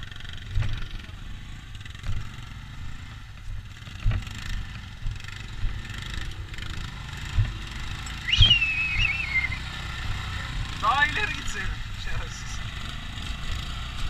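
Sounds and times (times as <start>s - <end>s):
atv engine running: 0.0s - 14.0s
sharp knocks and thuds: 3.4s - 6.3s, 7.2s - 8.6s
high squeal: 8.1s - 9.9s.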